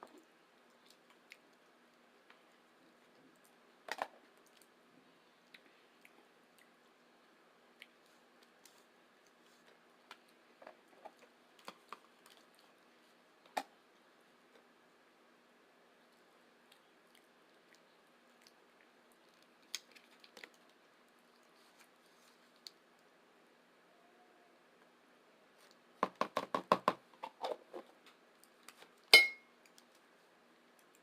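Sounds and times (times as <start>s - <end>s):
chewing with wet mouth clicks: 0.7s - 1.6s, 7.7s - 8.8s, 11.6s - 12.7s, 16.6s - 21.6s.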